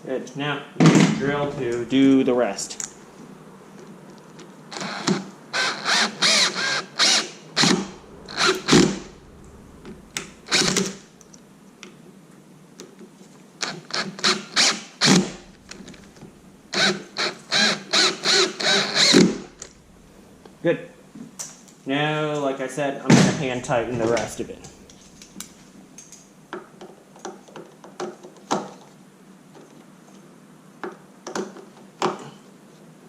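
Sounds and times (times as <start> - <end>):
cordless drill driving screws: 4.7 - 9.2, 9.8 - 11.1, 13.6 - 19.8.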